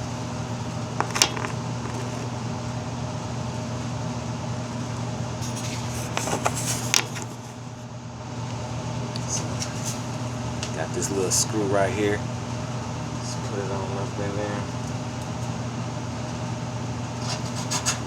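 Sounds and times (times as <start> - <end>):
steady machine hum: 0.0 - 18.0
small parts clicking and rattling: 1.0 - 2.2.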